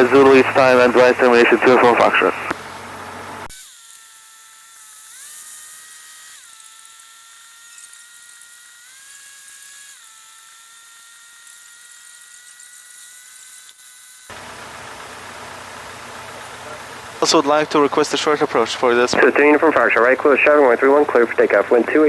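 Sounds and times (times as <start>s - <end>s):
aircraft engine whine: 0.0s - 3.5s, 14.3s - 22.0s.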